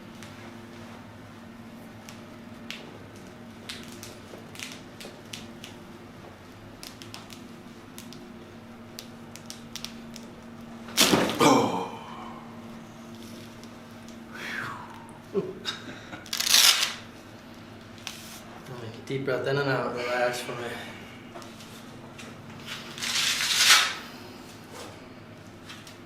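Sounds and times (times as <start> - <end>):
low steady hum: 0.0 - 26.0
strap handling: 16.2 - 17.0.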